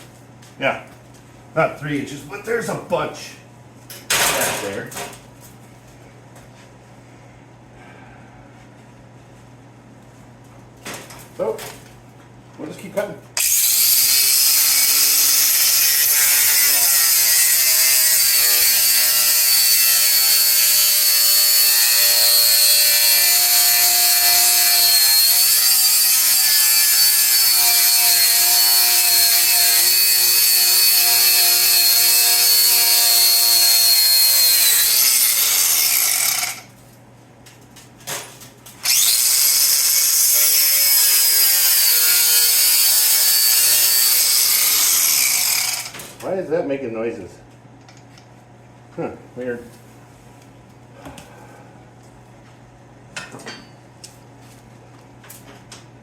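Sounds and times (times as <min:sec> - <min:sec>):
power cutoff tool cutting steel: 0:13.4 - 0:36.7, 0:38.8 - 0:46.0.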